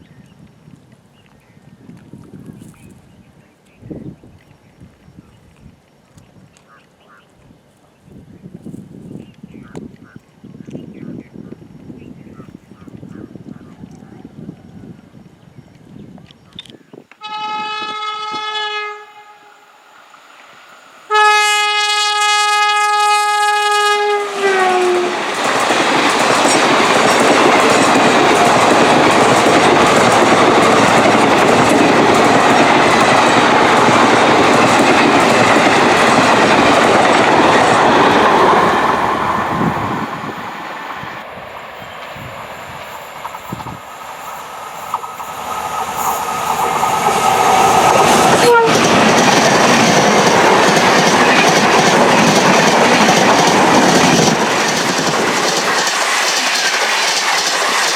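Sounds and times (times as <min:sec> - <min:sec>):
locomotive air horn blasts: 0:17.2 - 0:19.7, 0:21.1 - 0:25.2, 0:48.3 - 0:49.0
train coaches rushing on rails: 0:20.0 - 0:57.9.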